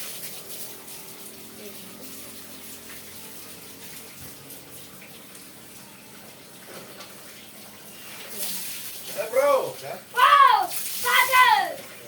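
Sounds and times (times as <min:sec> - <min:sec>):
watery hiss: 0:07.4 - 0:09.9, 0:10.6 - 0:11.4.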